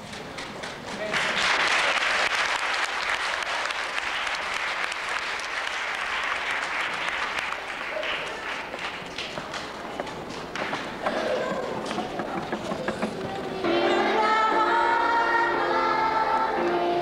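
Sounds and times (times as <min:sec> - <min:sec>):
crowd applauding: 0:00.3 - 0:13.6.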